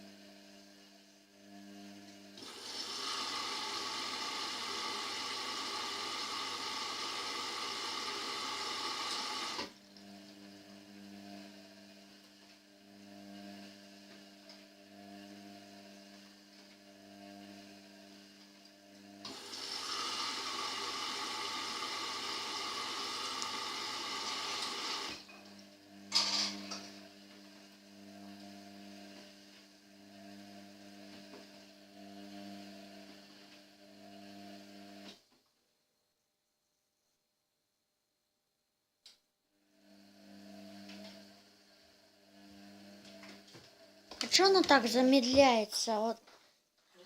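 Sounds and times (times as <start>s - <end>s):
washing machine hum: 2.3s - 13.9s, 19.1s - 29.3s, 39.7s - 46.2s
water rushing into washing machine: 2.4s - 9.7s, 19.2s - 25.2s.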